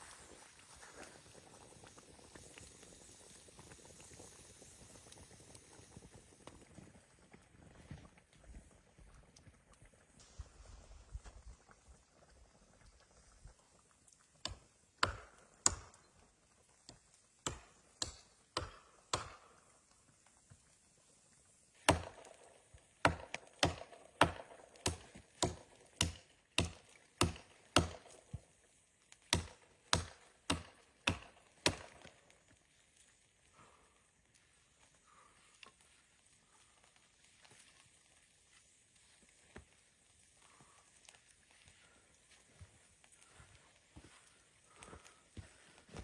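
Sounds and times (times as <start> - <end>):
wood being chopped: 14.4 - 16.0, 17.4 - 19.5, 21.8 - 22.4, 23.0 - 28.2, 29.3 - 32.1.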